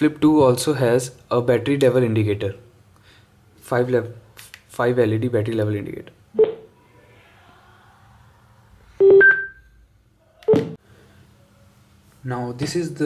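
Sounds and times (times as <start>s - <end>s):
electronic beep tones: 6.4s - 6.7s, 9.0s - 9.6s.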